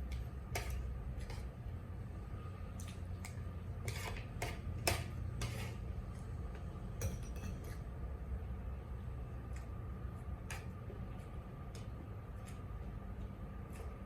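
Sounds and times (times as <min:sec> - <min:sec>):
low steady hum: 0:00.0 - 0:14.0
cutlery clinking on a plate: 0:07.0 - 0:07.8.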